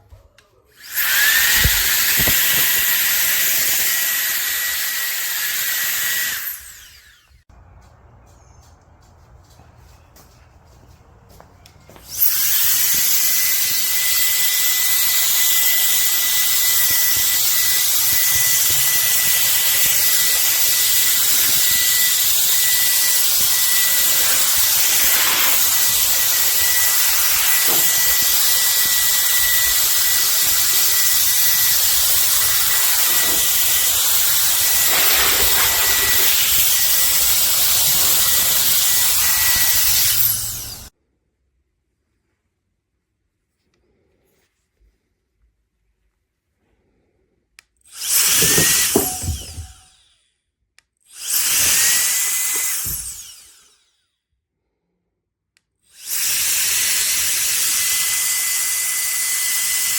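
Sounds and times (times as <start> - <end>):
electric air duster running: 0.8 - 7.4, 12.1 - 40.9, 48.0 - 50.0.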